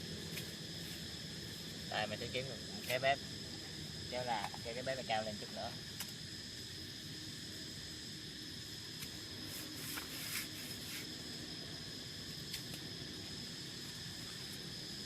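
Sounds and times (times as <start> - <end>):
crickets chirring: 0.0 - 15.0.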